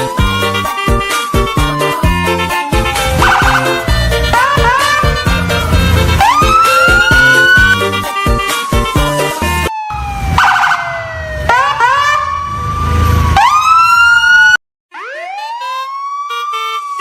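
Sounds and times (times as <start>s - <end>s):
music playing: 0.0s - 9.8s
wailing siren: 0.0s - 17.0s.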